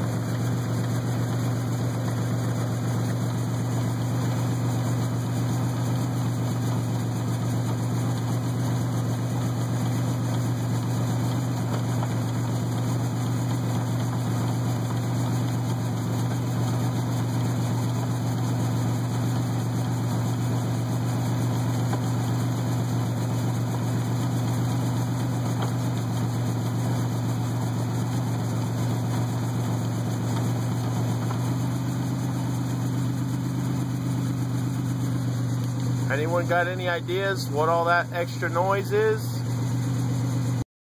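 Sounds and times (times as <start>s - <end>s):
engine and drivetrain running: 0.0s - 40.6s.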